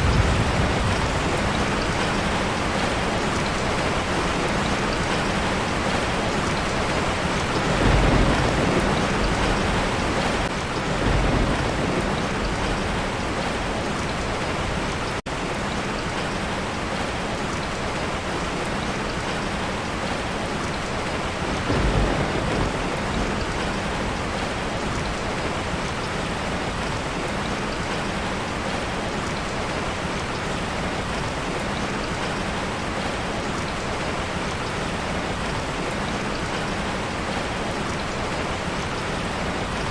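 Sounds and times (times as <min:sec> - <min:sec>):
low thunder rolls: 0:00.0 - 0:05.2, 0:06.9 - 0:15.2, 0:21.3 - 0:26.0
steady rain pouring: 0:00.0 - 0:39.9.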